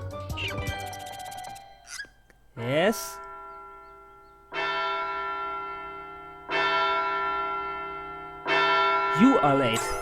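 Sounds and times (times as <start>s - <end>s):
large bell tolling: 3.2s - 10.0s.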